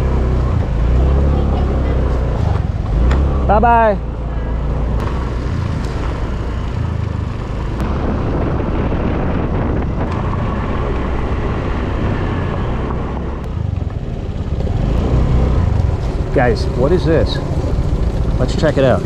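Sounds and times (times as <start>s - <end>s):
scooter engine running: 0.0s - 9.1s, 10.0s - 19.0s
wind rushing over microphone: 4.8s - 19.0s.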